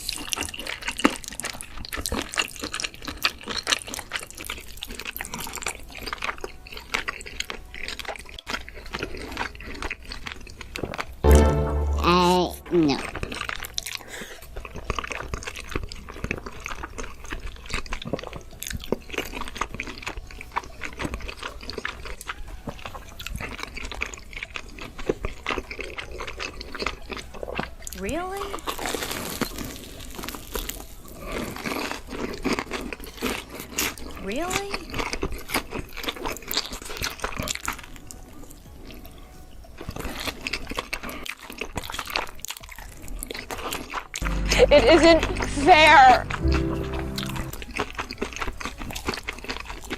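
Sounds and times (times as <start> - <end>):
person chewing food wetly: 0.0 - 11.2, 13.0 - 44.5, 45.9 - 49.9.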